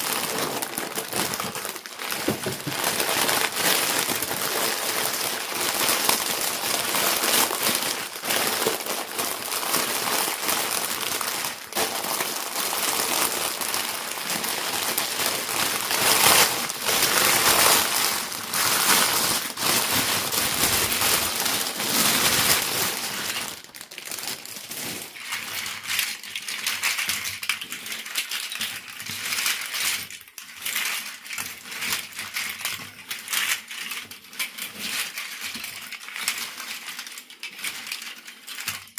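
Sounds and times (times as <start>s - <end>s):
plastic packaging crinkling: 0.0s - 38.9s.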